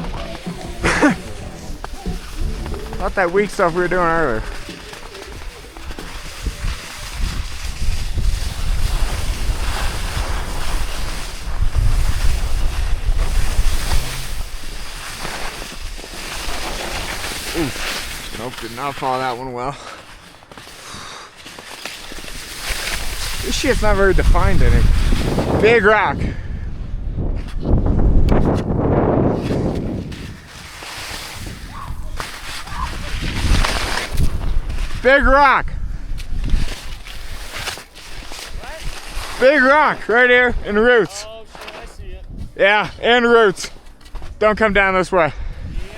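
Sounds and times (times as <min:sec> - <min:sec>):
wind buffeting microphone: 0:00.0 - 0:15.0, 0:23.0 - 0:37.4, 0:41.9 - 0:43.0, 0:45.3 - 0:45.9
ski edges scraping snow: 0:00.0 - 0:26.2, 0:28.4 - 0:35.5, 0:36.2 - 0:44.4.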